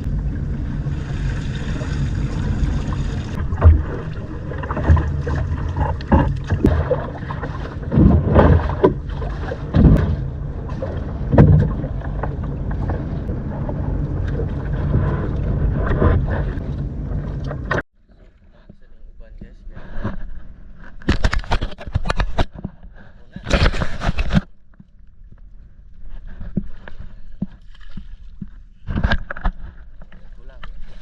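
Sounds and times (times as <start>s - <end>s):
boat engine running: 0.0s - 17.8s
knocks and thumps: 9.7s - 10.3s, 11.3s - 13.1s.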